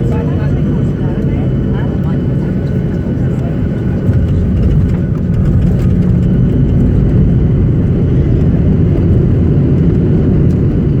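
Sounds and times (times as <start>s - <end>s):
airplane engine rumble in cabin: 0.0s - 11.0s.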